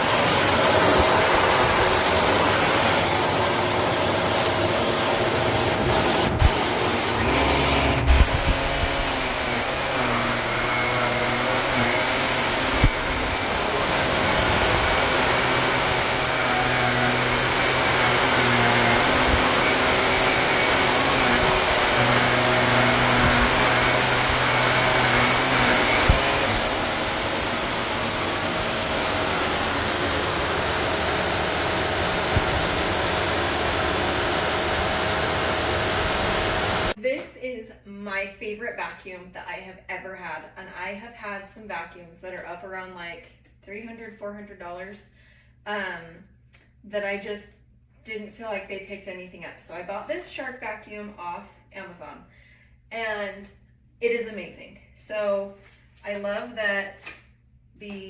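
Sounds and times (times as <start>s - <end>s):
vacuum cleaner running: 0.0s - 37.0s.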